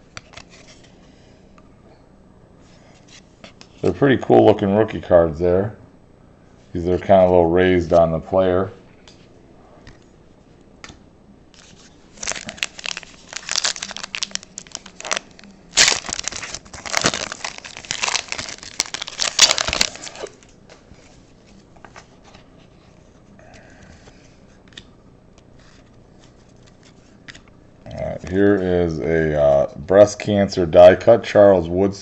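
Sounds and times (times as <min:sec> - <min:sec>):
plastic wrapper crinkling: 0:11.6 - 0:20.6.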